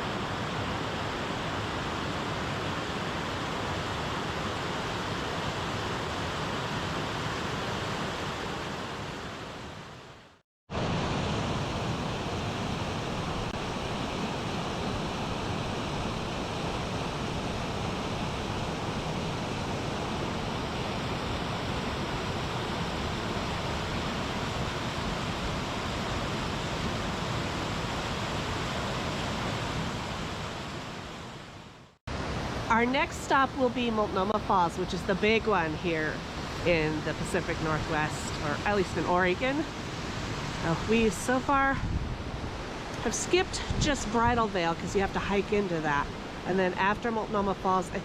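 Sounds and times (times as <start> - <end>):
waterfall roaring: 10.7 - 48.0.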